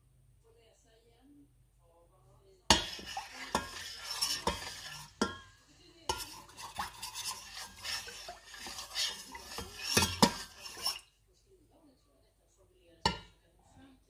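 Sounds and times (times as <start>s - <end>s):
teaspoon stirring and clinking: 2.7s - 11.1s.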